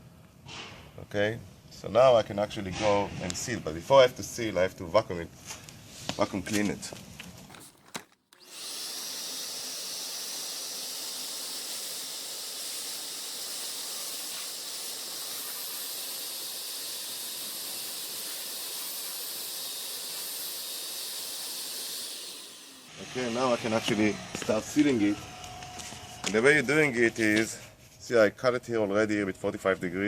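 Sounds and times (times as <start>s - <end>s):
vacuum cleaner running: 7.5s - 26.4s.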